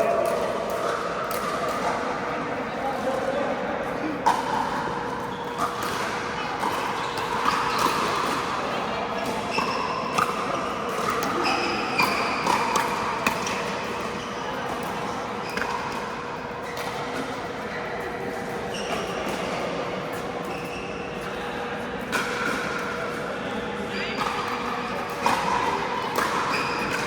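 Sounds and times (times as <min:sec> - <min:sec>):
shoes squeaking on court floor: 0:06.7 - 0:08.2, 0:09.4 - 0:12.8, 0:20.5 - 0:21.2.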